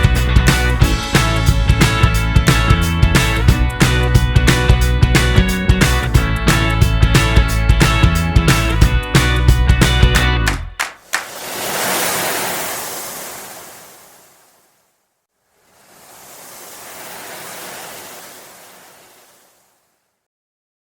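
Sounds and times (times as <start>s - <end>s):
rushing noise: 11.0s - 14.8s, 15.5s - 19.8s.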